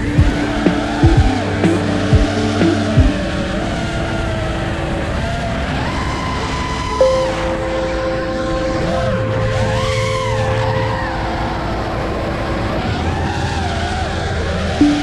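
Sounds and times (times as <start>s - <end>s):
held music notes: 0.0s - 3.8s, 14.8s - 15.0s.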